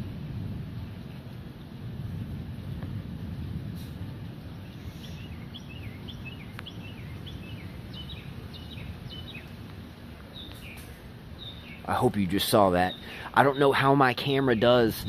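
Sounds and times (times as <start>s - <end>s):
storm wind and rain rumble: 0.0s - 15.0s
bird chirping: 4.6s - 14.9s.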